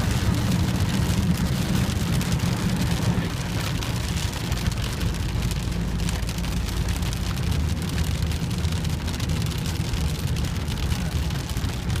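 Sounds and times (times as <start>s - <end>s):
constant low rumble: 0.0s - 12.0s
rain falling: 0.0s - 12.0s.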